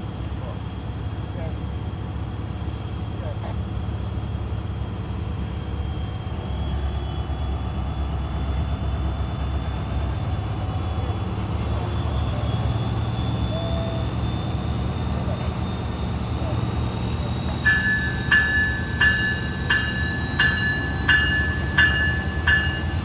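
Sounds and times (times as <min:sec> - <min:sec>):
train rumbling: 0:00.0 - 0:23.0
faint high squeal: 0:05.9 - 0:23.0.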